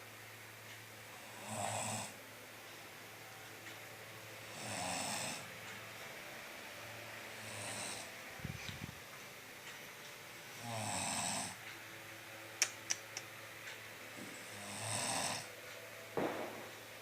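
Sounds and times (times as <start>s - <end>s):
person snoring: 1.2s - 2.2s, 4.5s - 5.4s, 7.4s - 8.1s, 10.6s - 11.6s, 14.4s - 15.5s
sharp clicks: 12.6s - 13.4s.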